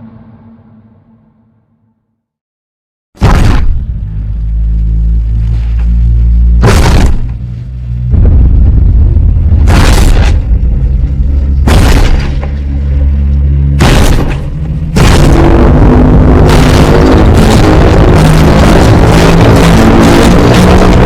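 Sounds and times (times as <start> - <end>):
continuous roaring noise: 3.2 - 21.0
deep booming monster rumble: 3.2 - 21.0
sharp crashes: 6.6 - 7.4, 9.5 - 10.8, 11.6 - 12.8, 13.8 - 21.0.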